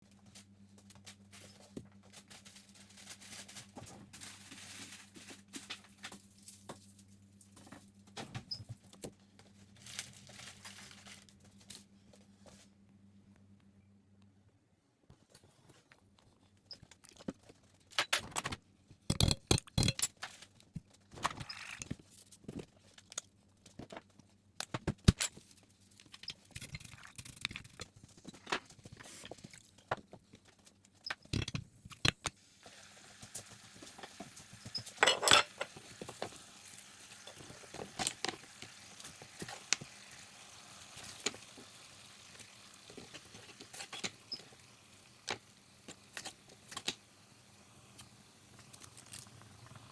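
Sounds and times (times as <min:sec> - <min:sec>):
metal and crockery clinking: 0:34.7 - 0:36.2.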